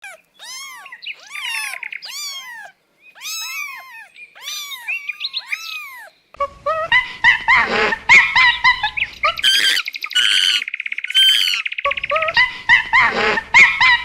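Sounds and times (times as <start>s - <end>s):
kittens meowing: 0.0s - 6.2s, 9.4s - 10.6s.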